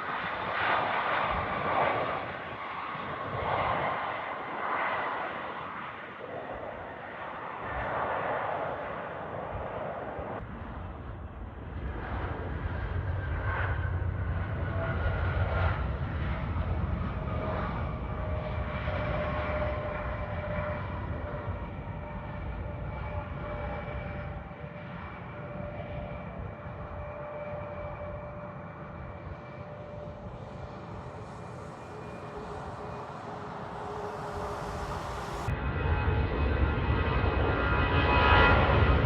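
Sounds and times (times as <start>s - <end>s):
jet airliner engines rumbling: 0.0s - 39.0s
whining engine tones: 25.3s - 36.2s.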